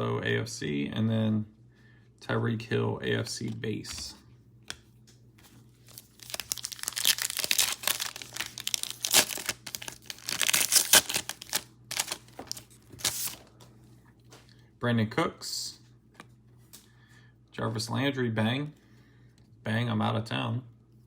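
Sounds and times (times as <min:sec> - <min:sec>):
plastic wrapper tearing and crinkling: 0:05.8 - 0:13.4.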